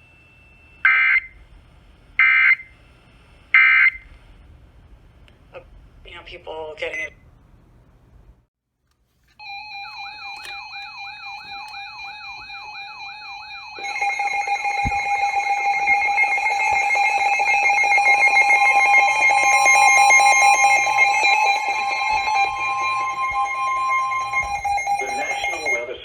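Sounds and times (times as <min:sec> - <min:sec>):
multi-tone alert signal: 0:09.4 - 0:26.0
warbling alarm tones: 0:09.4 - 0:26.0.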